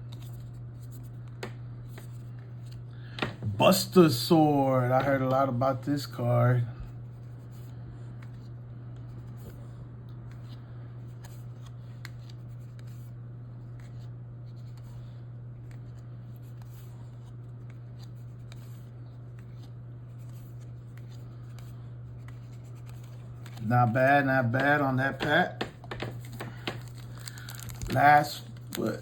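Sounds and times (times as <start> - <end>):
steady low hum: 0.0 - 29.0
cards being flipped through: 10.2 - 29.0.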